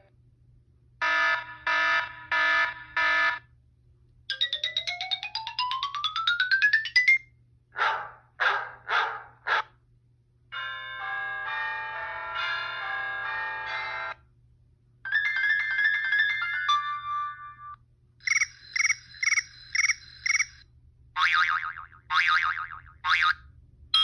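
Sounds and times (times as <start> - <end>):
pulsing ringtone pattern: 4.3 - 7.2, 18.2 - 20.6
ringtone run of notes: 4.3 - 7.3, 15.1 - 20.6.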